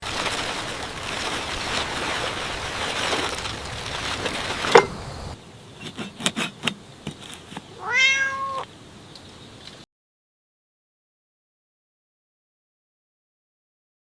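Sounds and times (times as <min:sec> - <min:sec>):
cat meowing: 0:07.8 - 0:08.7.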